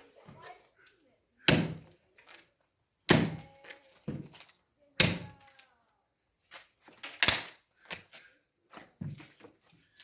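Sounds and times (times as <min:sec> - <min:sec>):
sharp thuds: 0:01.4 - 0:01.9.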